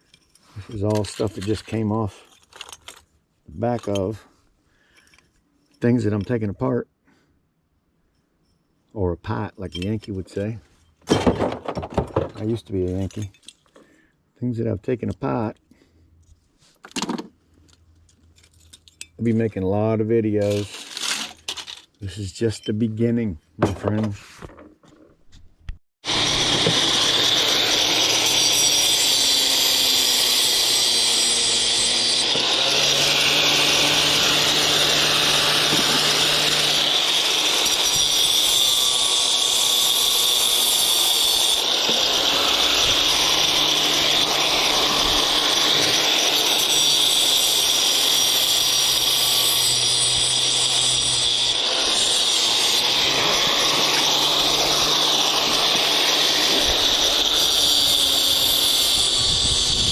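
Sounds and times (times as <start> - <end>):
power tool running: 26.0 - 59.9.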